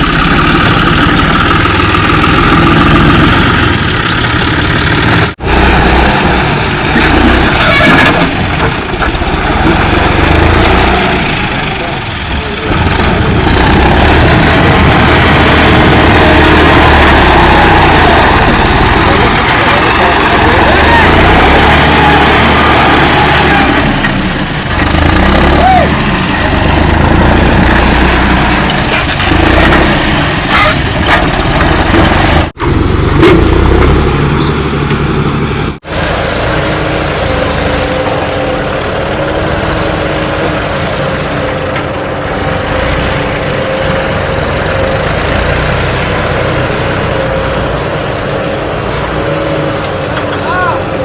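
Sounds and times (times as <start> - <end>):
heavy machinery diesel engines: 0.0 - 51.0.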